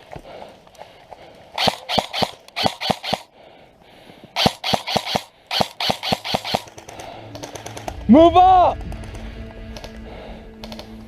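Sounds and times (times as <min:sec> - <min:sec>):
airsoft guns firing: 0:01.6 - 0:03.3, 0:04.4 - 0:08.0.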